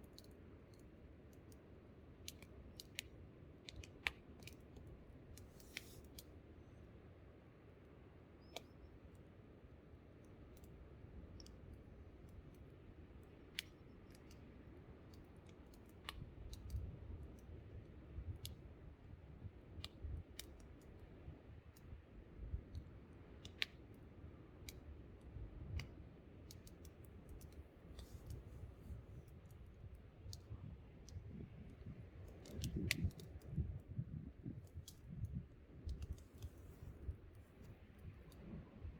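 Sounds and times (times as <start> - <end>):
wind rumble on microphone: 16.0 - 23.0, 27.3 - 38.9.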